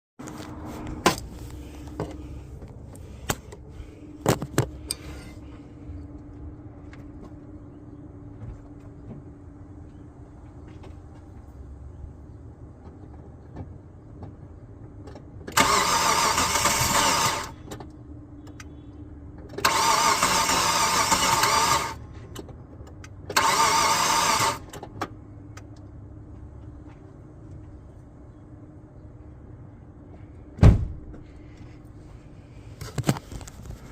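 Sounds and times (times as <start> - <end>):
car starter cranking engine: 15.4 - 17.8, 19.5 - 22.0, 23.2 - 25.0.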